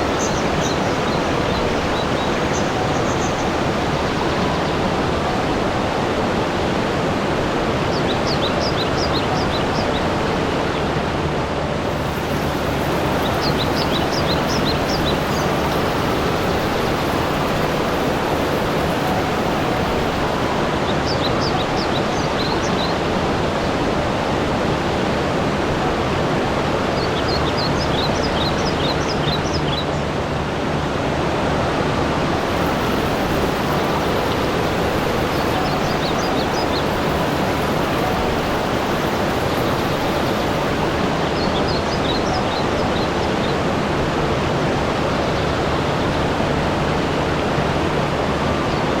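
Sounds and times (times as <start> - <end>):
rushing water: 0.0 - 49.0.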